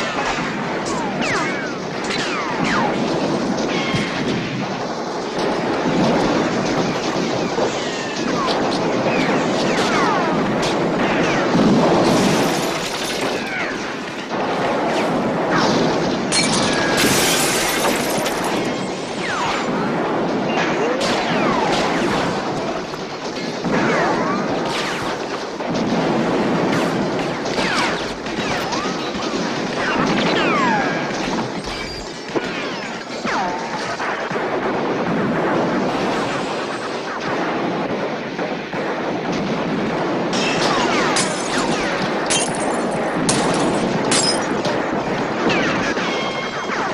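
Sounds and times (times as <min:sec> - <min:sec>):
massed gunfire: 0:00.0 - 0:46.9
glass and wood smashing: 0:12.1 - 0:13.4, 0:16.3 - 0:18.7, 0:42.3 - 0:44.5.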